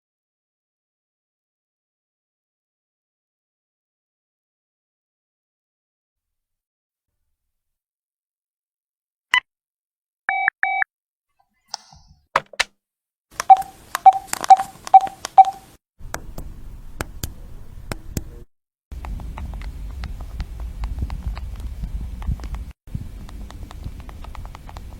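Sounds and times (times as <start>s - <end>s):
phone keypad clicks with beeps: 10.3s - 10.8s, 13.4s - 15.7s
low rumbling noise: 16.0s - 24.9s.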